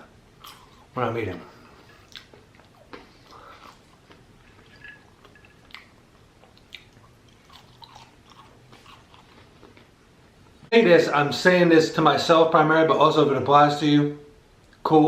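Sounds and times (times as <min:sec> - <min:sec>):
person chewing fried food: 0:00.4 - 0:00.9, 0:01.7 - 0:10.0.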